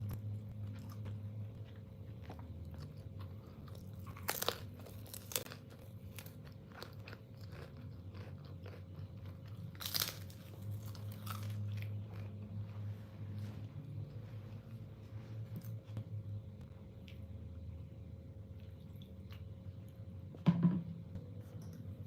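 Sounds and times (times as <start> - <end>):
low hum: 0.0 - 6.2, 9.0 - 22.0
person chewing chicken: 0.1 - 12.6
crackles of bites: 2.1 - 12.6.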